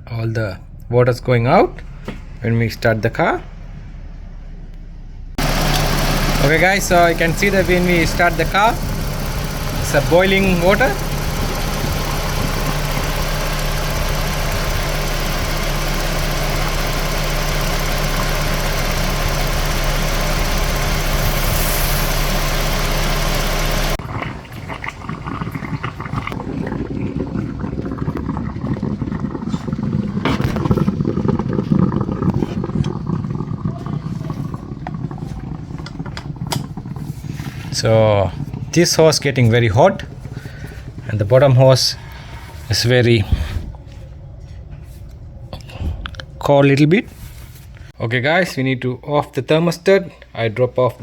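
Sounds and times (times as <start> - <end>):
car engine idling: 0.7 - 24.0
coolant boiling: 5.4 - 42.3.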